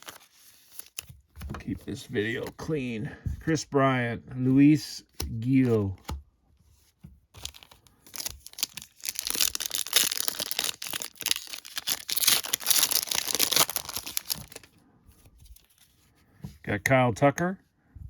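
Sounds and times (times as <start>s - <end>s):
foil wrapper tearing and crinkling: 0.0s - 1.1s, 7.4s - 14.7s.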